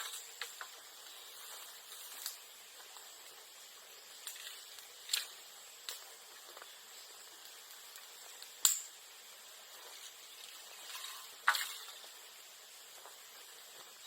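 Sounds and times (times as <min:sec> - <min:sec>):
bamboo stems popping: 0:00.0 - 0:03.0, 0:04.1 - 0:09.0, 0:09.7 - 0:12.2
bonfire hissing: 0:00.0 - 0:14.0.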